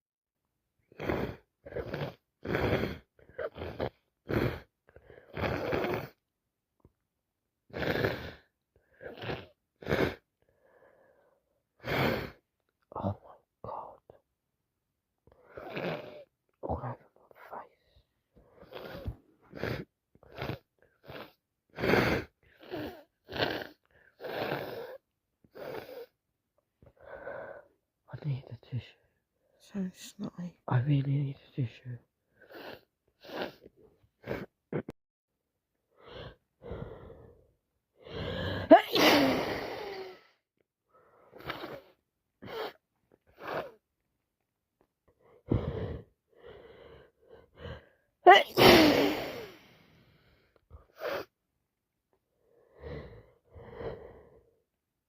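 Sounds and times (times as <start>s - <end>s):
gasping breaths: 35.9s - 43.8s, 45.1s - 48.4s, 52.4s - 54.6s
woman gasping breaths: 38.0s - 40.3s
woman sneezing: 38.6s - 40.1s, 48.3s - 49.6s.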